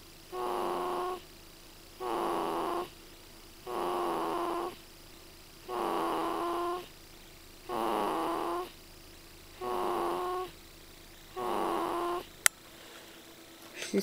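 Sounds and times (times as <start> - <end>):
loud whistly snoring: 0.3 - 1.2, 2.0 - 3.0, 3.6 - 4.8, 5.6 - 6.9, 7.6 - 8.8, 9.5 - 10.6, 11.3 - 12.4.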